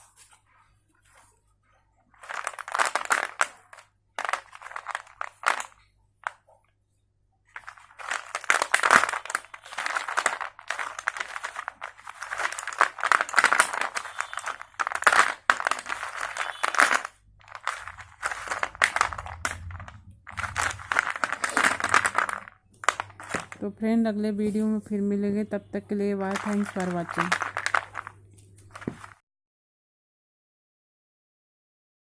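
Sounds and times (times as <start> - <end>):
slate pencils crunching: 2.1 - 6.4, 7.5 - 23.7, 26.0 - 29.2.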